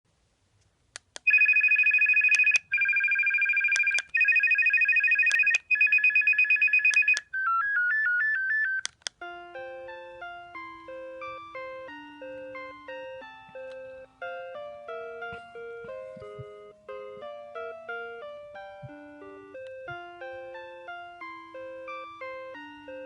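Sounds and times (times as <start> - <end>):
phone clicks: 1.0 - 9.3
slow polyphonic ringtone melody: 1.3 - 23.0.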